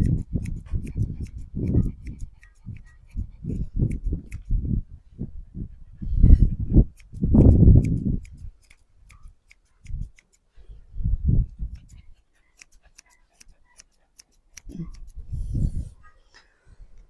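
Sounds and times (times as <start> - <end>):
scissors snipping: 0.0 - 4.5, 7.0 - 10.5, 11.7 - 15.2.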